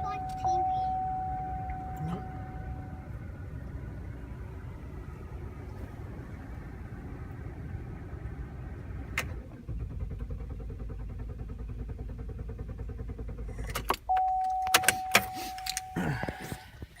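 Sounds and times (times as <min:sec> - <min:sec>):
car engine cranking: 0:00.0 - 0:17.0
electronic warning chime: 0:00.1 - 0:03.1, 0:14.1 - 0:16.0.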